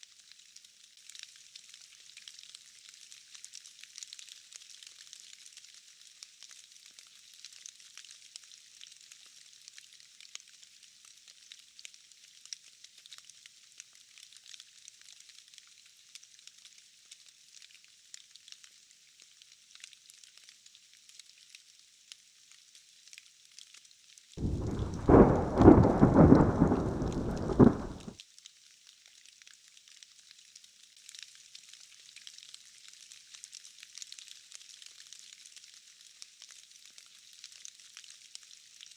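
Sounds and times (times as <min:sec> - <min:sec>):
rain hissing: 0:24.4 - 0:28.1
thunder clap rumbling: 0:24.4 - 0:28.1.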